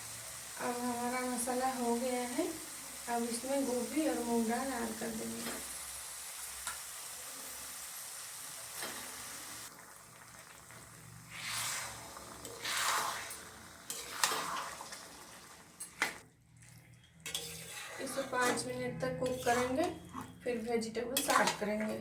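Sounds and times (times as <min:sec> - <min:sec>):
food sizzling in a frying pan: 0:00.0 - 0:16.2
stirring in a pan: 0:09.6 - 0:22.0.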